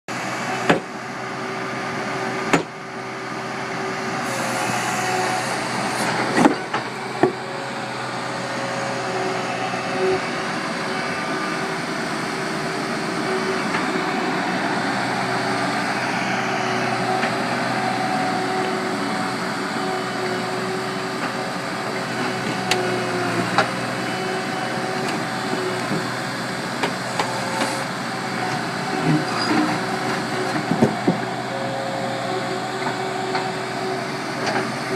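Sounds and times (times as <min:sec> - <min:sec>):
diesel engine running: 0:00.1 - 0:34.9.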